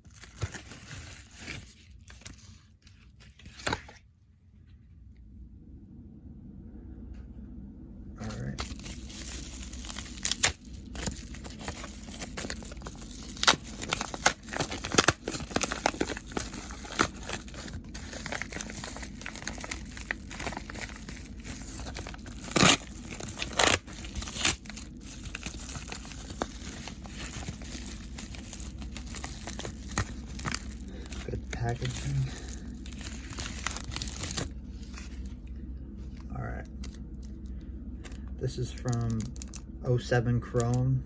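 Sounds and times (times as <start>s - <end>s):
packaging ripping: 0.0s - 2.6s, 8.4s - 35.2s, 38.7s - 39.6s
packaging crinkling and rustling: 0.0s - 4.0s, 8.4s - 35.5s, 36.1s - 40.8s.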